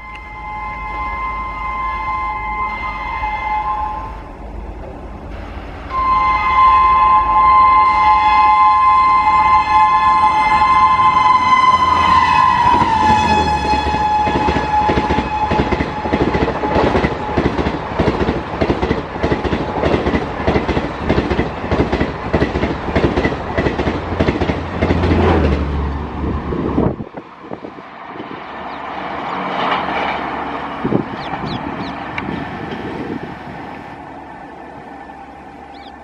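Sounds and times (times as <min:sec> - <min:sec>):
train horn: 0:00.0 - 0:04.6, 0:05.3 - 0:17.8
rush of train noise: 0:00.0 - 0:36.0
train wheels clattering over rail joints: 0:14.2 - 0:25.8.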